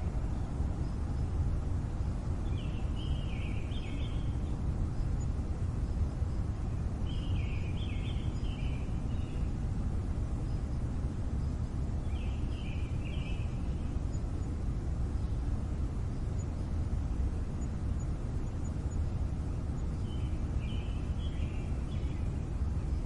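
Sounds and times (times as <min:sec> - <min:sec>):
city traffic rumble: 0:00.0 - 0:23.0
bird calls: 0:02.4 - 0:05.3, 0:05.9 - 0:09.6, 0:12.0 - 0:14.6, 0:17.5 - 0:23.0.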